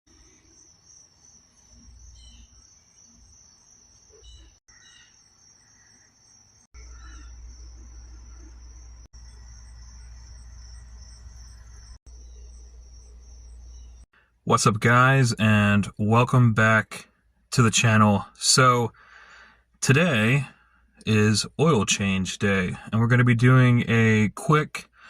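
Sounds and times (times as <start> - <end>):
insects chirring: 0.1 - 14.1
short insect chirps: 0.1 - 14.1.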